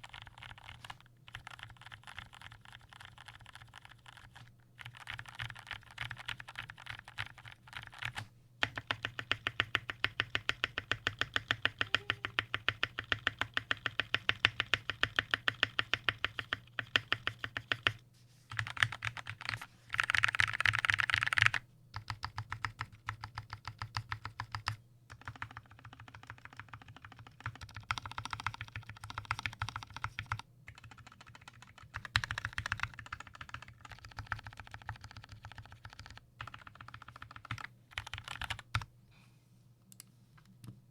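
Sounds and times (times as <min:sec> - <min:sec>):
mechanical keyboard typing: 0:00.0 - 0:38.9.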